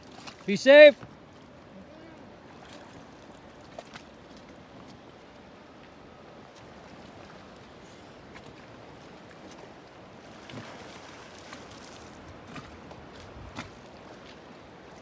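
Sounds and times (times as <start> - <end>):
water lapping against boat hull: 0.0 - 15.0
sharp water splashes: 6.6 - 15.0.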